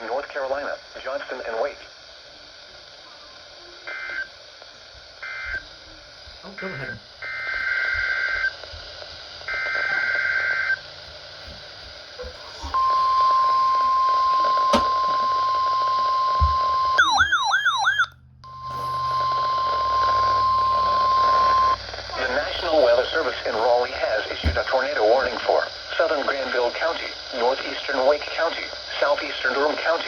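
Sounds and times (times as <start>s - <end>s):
steady warning alarm tone: 5.2s - 29.6s
screechy two-tone data bursts: 12.6s - 24.4s.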